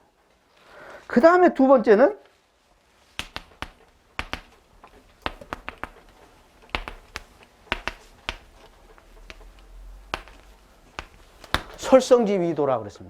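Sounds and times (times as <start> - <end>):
sharp taps and clicks: 3.2 - 11.9.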